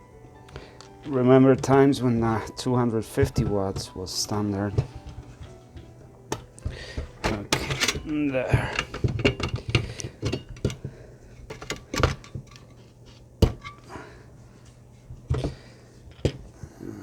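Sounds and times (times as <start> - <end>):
low steady hum: 0.0 - 17.0
metal parts clicking and knocking: 4.6 - 12.8, 13.4 - 13.9.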